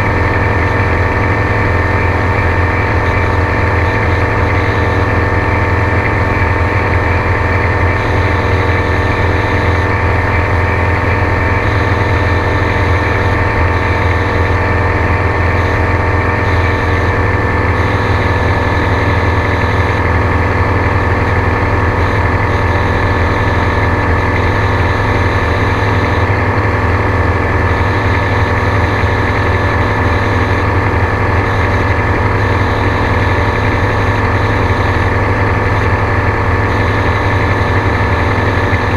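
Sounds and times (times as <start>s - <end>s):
engine and propeller drone: 0.0s - 38.9s.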